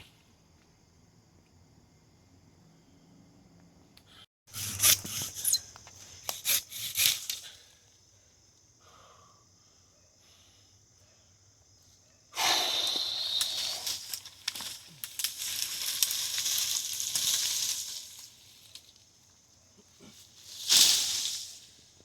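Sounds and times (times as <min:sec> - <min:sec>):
leaves and twigs rustling: 0:13.0 - 0:22.0.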